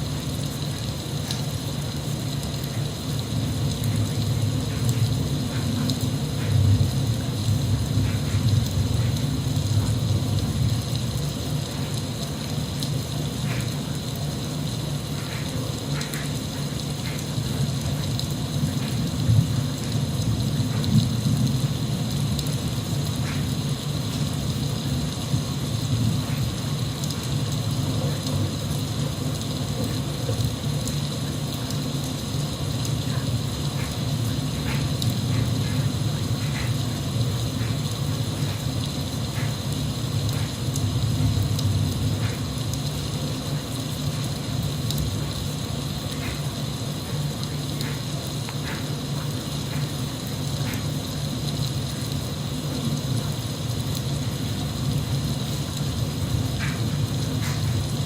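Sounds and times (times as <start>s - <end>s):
light drip ticks: 0.0s - 58.0s
steady rain hiss: 0.0s - 58.0s.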